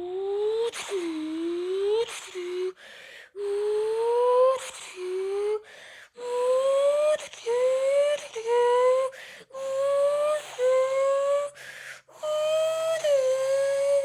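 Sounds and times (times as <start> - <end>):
quick breaths: 5.7 - 6.1.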